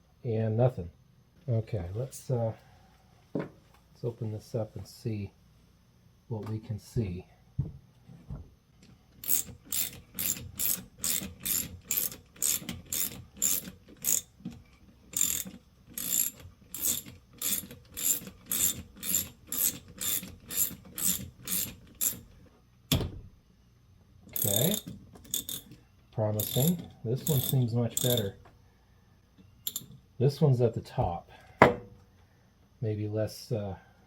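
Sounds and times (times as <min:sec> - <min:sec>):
ratchet wrench clicking: 0:09.2 - 0:14.3, 0:15.1 - 0:22.2, 0:24.3 - 0:25.7, 0:26.4 - 0:28.3, 0:29.7 - 0:29.9
sharp knock: 0:31.6 - 0:31.9.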